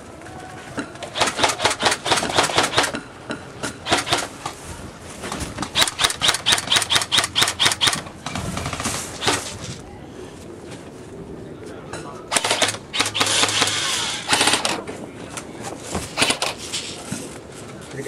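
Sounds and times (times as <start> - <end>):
airsoft gun firing: 1.0 - 3.0, 3.8 - 4.3, 5.6 - 8.1, 12.3 - 14.8, 16.2 - 16.6.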